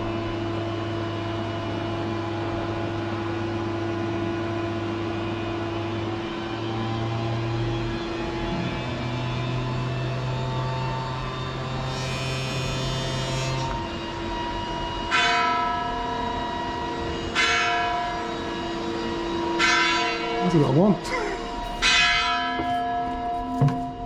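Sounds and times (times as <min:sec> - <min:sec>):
large bell tolling: 0:15.1 - 0:24.0.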